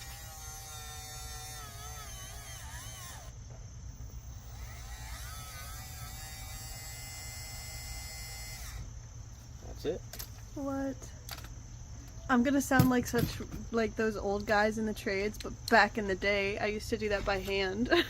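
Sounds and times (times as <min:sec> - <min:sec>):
electric tool motor whirring: 0:00.0 - 0:09.0.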